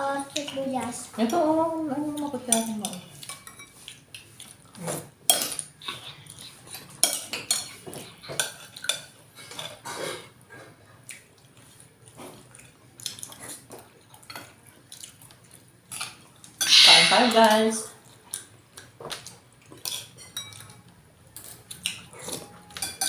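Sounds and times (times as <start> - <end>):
cutlery clinking on plates: 2.5 - 5.7, 6.7 - 10.0, 19.1 - 20.8, 21.4 - 23.0.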